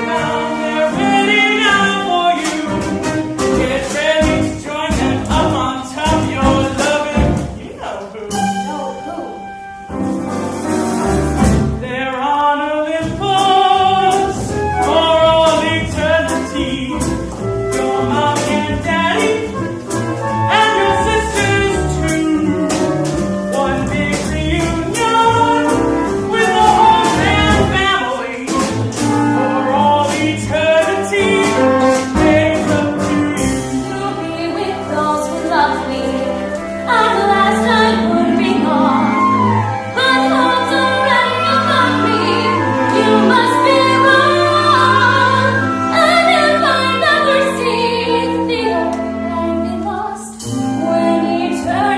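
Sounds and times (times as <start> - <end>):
voices singing with vibrato: 0.0 - 9.6, 11.0 - 51.9
small band with bass and percussion: 0.0 - 12.0, 13.0 - 34.1, 47.1 - 51.9.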